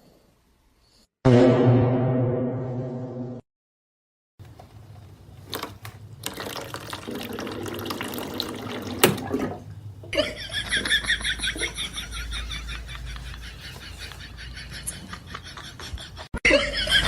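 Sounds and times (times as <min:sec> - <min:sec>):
tap water splashing into sink: 0:05.5 - 0:09.7.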